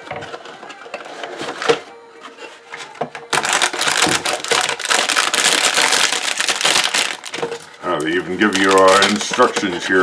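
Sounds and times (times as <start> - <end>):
packaging crinkling: 3.3 - 9.7.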